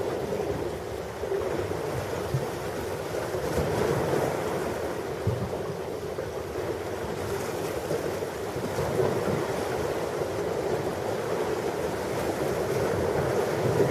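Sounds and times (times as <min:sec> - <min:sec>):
ocean waves washing onto beach: 0:00.0 - 0:13.9
wind noise on microphone: 0:06.9 - 0:13.9.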